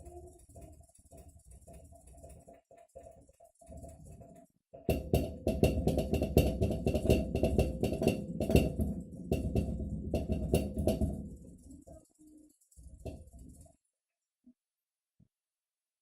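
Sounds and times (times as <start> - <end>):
refrigerator knocking: 4.9 - 11.4.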